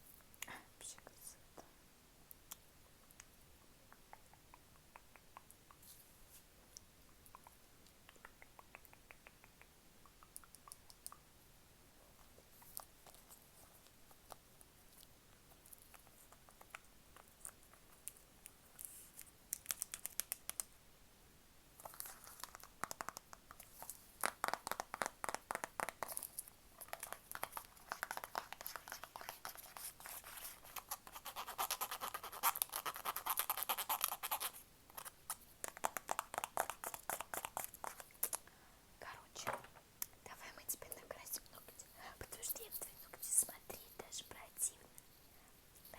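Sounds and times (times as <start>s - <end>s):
tapping and scratching on objects: 21.8s - 38.4s.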